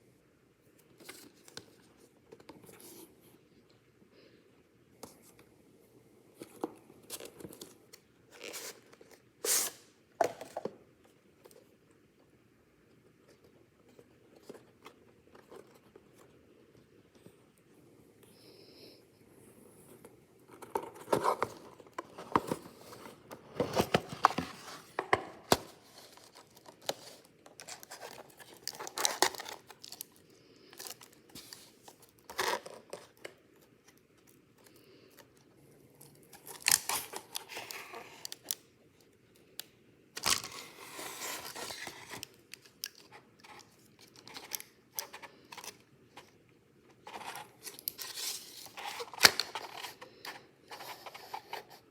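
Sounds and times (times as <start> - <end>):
packaging tearing and crinkling: 25.4 - 30.2, 36.4 - 38.6.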